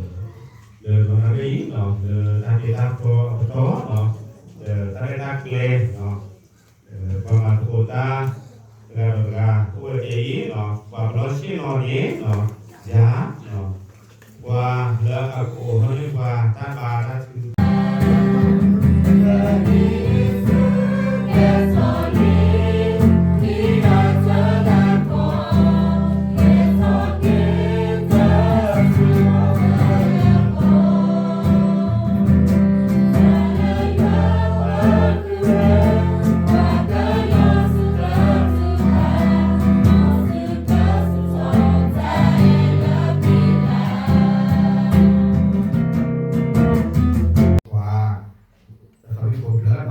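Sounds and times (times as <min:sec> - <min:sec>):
choir singing: 0:17.6 - 0:45.7
steady bass accompaniment: 0:17.6 - 0:47.6.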